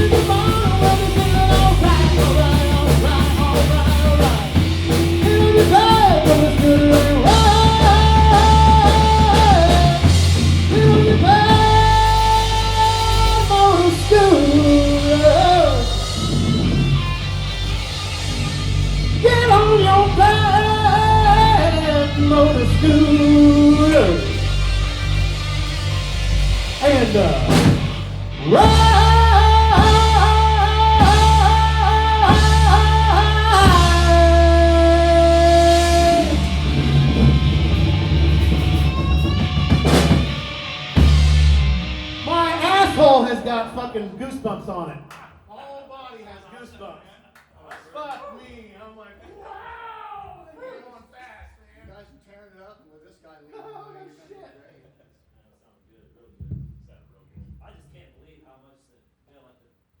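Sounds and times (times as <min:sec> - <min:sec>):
person singing: 0:00.0 - 0:16.5, 0:19.2 - 0:24.7, 0:28.4 - 0:40.5, 0:42.2 - 0:43.4
electric guitar: 0:00.0 - 0:43.3
bass guitar: 0:00.0 - 0:43.9
rock band playing: 0:00.0 - 0:44.0
drums: 0:00.0 - 0:45.5, 0:56.3 - 0:58.2.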